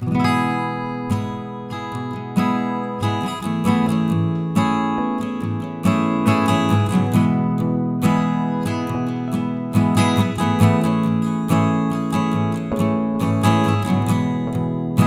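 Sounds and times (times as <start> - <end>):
strummed acoustic guitar: 0.0 - 15.0.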